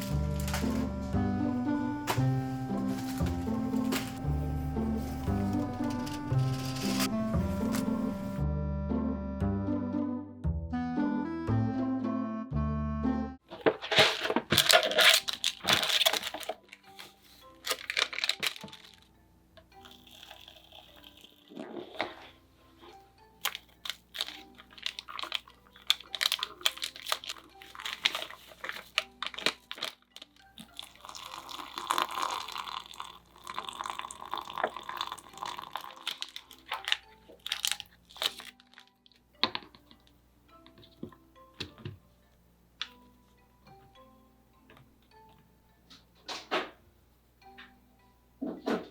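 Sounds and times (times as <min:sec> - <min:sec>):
plastic packaging crinkling: 0:00.0 - 0:01.2, 0:02.1 - 0:08.3, 0:13.5 - 0:19.1, 0:19.8 - 0:22.2, 0:23.4 - 0:39.2
soft background music: 0:00.0 - 0:48.9.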